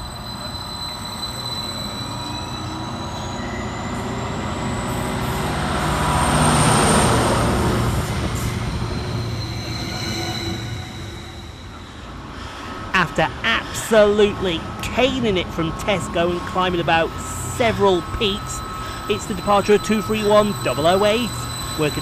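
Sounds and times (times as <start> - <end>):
diesel train passing: 0.0 - 22.0
high whine rising in pitch: 12.8 - 22.0.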